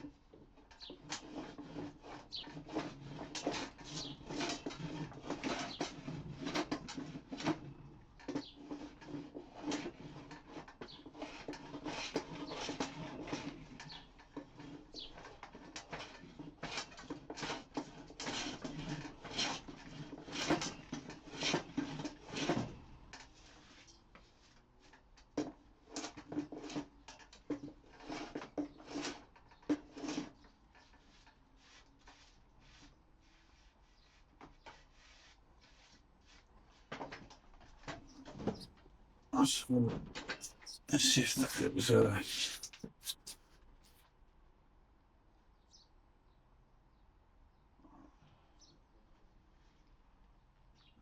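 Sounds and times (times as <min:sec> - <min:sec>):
hand plane shaving wood: 0:01.1 - 0:06.2.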